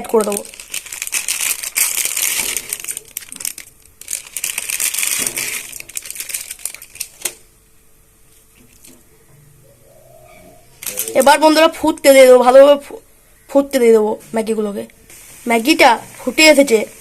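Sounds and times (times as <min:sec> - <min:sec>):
noodles and plastic packets crinkling: 0:00.0 - 0:07.4, 0:10.8 - 0:11.4.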